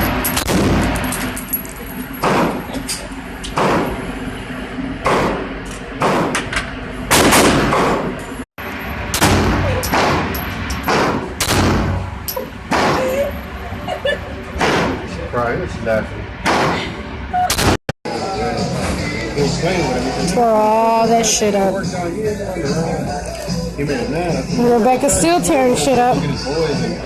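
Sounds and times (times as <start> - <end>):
echoing gunshots: 0.4 - 1.0, 2.2 - 2.6, 3.6 - 4.0, 5.0 - 6.4, 7.1 - 8.2, 9.1 - 12.1, 14.6 - 15.0, 16.4 - 16.8.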